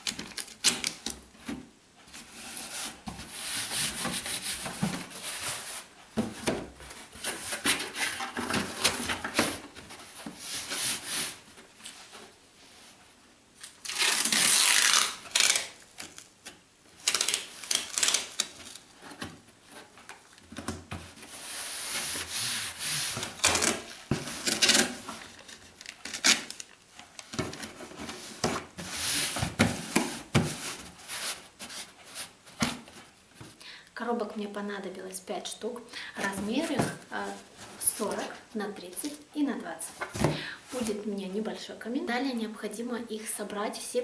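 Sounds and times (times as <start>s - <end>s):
cardboard rubbing and rustling: 1.4s - 13.0s, 17.0s - 26.6s, 27.2s - 33.6s, 36.2s - 38.4s.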